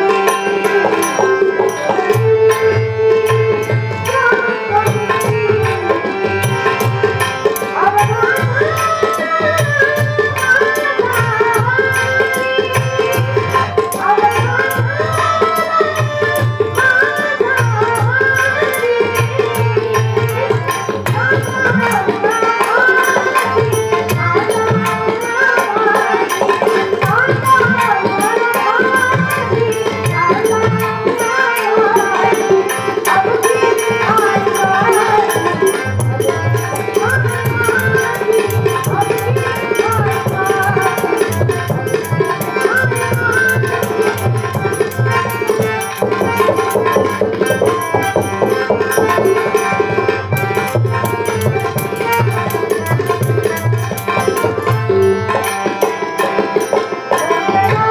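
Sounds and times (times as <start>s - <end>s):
hand drum fast rhythm: 18.9s - 57.9s.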